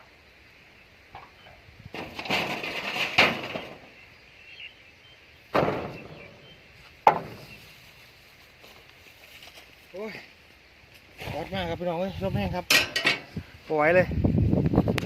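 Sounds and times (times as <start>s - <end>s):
debris scraping and clattering: 1.9s - 4.0s
metal sheet banging: 1.9s - 4.0s, 5.5s - 6.4s, 7.1s - 7.6s, 12.7s - 13.3s.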